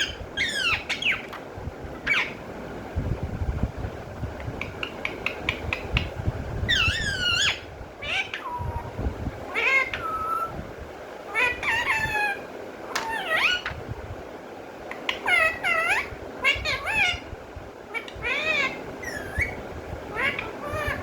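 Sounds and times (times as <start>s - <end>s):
parrot shrill calls: 0.0s - 2.4s, 6.7s - 8.9s, 9.5s - 10.5s, 11.3s - 13.8s, 15.1s - 17.3s, 17.9s - 21.0s
parrot clicks: 4.4s - 6.2s.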